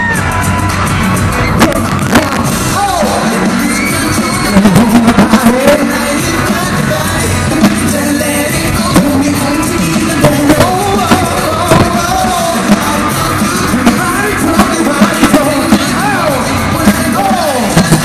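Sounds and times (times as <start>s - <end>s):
crowd shouting: 0.0s - 7.0s, 10.6s - 18.0s
live pop band: 0.0s - 18.0s
person singing: 1.6s - 18.0s.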